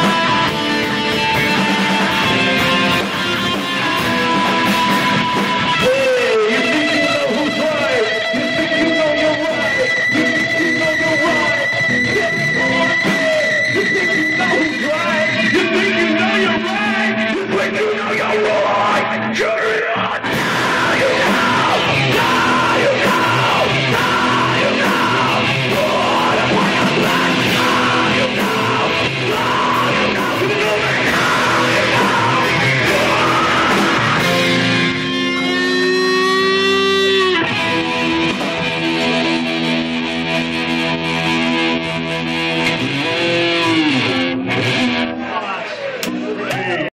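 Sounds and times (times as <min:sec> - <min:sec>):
electric guitar: 0:00.0 - 0:46.9
live rock band playing: 0:00.0 - 0:46.9
person yelling vocals: 0:05.8 - 0:37.4.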